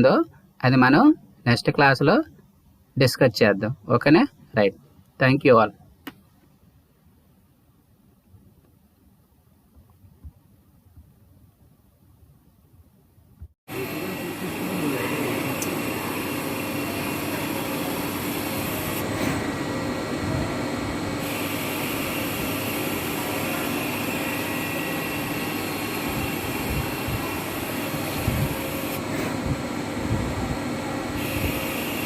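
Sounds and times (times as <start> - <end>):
machine running with low hum: 13.7 - 32.0.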